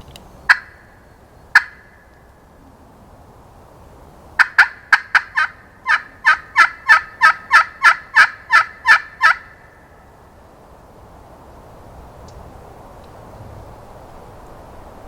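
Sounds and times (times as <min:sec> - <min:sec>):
turkey call hen yelps: 0:00.5 - 0:00.9, 0:01.6 - 0:02.0, 0:04.4 - 0:09.6.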